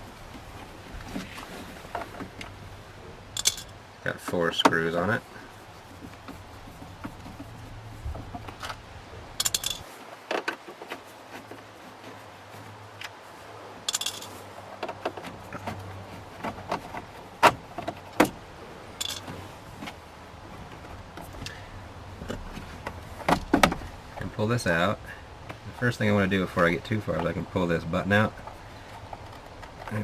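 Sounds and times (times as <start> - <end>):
metallic jingles of screws: 3.4 - 3.8, 9.4 - 9.9, 13.9 - 14.4, 19.0 - 19.3.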